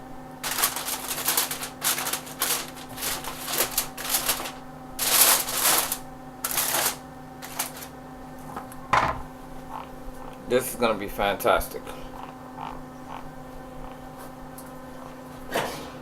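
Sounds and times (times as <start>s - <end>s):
aluminium foil crinkling: 0.4s - 8.0s.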